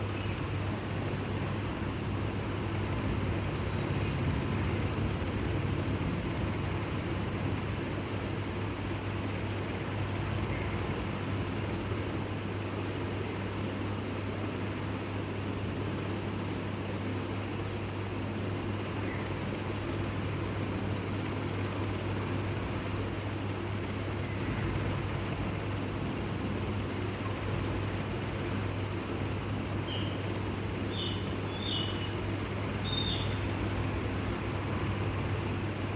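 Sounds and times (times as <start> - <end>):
bird giving sharp high calls: 30.9 - 32.2, 32.8 - 33.4.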